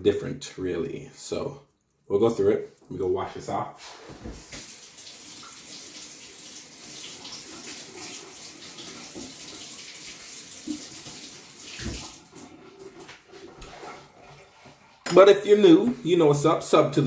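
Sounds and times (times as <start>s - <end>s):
kitchen tap running: 3.8s - 16.0s.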